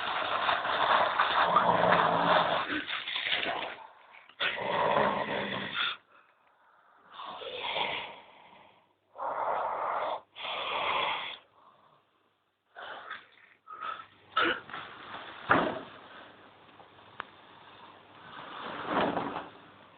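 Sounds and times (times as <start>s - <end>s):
rustling: 0.0s - 4.4s, 14.6s - 19.9s
person snoring: 1.4s - 6.0s, 7.0s - 11.6s.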